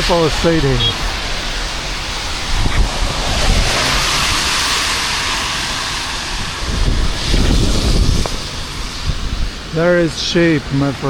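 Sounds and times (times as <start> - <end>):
rushing hiss: 0.0 - 11.0
wind buffeting microphone: 0.0 - 11.0.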